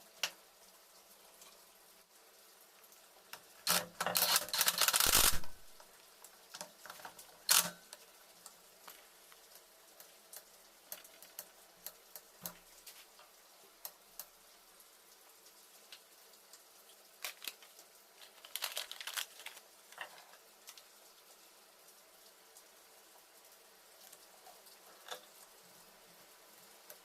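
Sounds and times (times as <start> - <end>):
metal parts clattering: 3.7 - 5.6
sharp click: 3.7 - 5.6
light ticks: 6.5 - 14.4.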